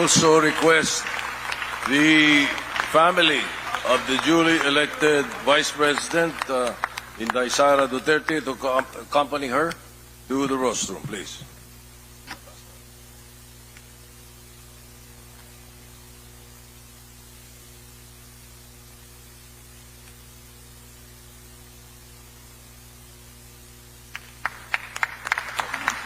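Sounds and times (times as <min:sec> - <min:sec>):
electrical mains hum with hiss: 0:00.0 - 0:26.0.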